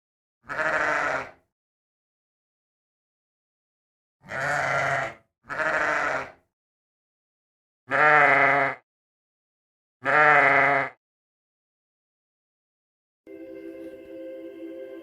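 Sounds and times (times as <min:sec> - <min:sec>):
sheep bleating: 0:00.5 - 0:01.4, 0:04.2 - 0:06.4, 0:07.9 - 0:08.8, 0:10.0 - 0:11.0.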